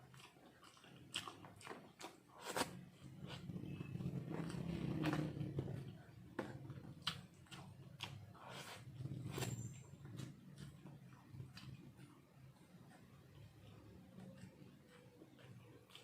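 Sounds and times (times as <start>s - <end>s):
person chewing with lip smacks: 0.0s - 3.5s.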